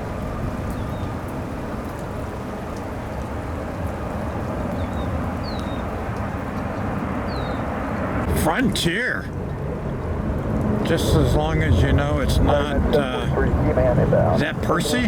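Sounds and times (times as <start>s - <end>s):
wind buffeting microphone: 0.0s - 8.6s, 9.3s - 15.0s
steady rain: 0.0s - 15.0s.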